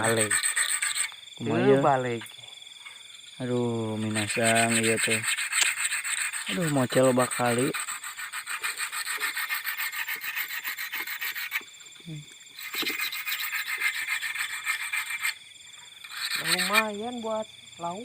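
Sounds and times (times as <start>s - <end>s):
rapid scratchy rasping: 0.0s - 1.1s, 4.0s - 11.7s, 12.6s - 15.4s, 16.0s - 17.1s
insect chirring: 0.0s - 18.0s.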